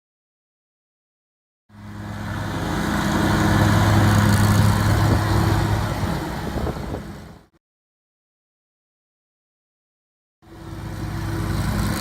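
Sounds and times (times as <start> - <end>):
riding lawn mower engine running: 1.7 - 7.5, 10.4 - 12.0.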